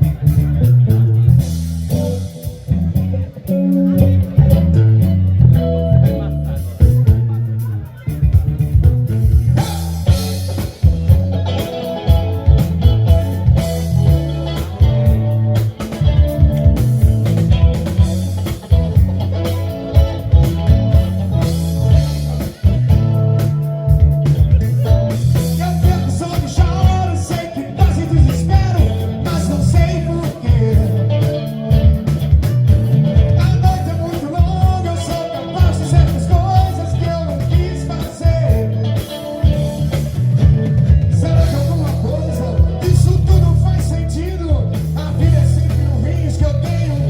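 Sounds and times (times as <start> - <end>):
bass line: 0.0 - 47.0
guitar: 0.0 - 47.0
steady beat: 0.0 - 47.0
person singing: 25.4 - 31.6, 33.3 - 39.8, 41.2 - 47.0.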